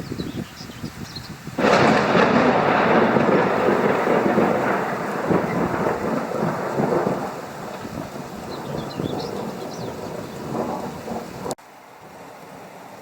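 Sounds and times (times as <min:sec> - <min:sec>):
rain falling: 0:00.0 - 0:13.0
thunder crack and rumble: 0:01.6 - 0:11.6.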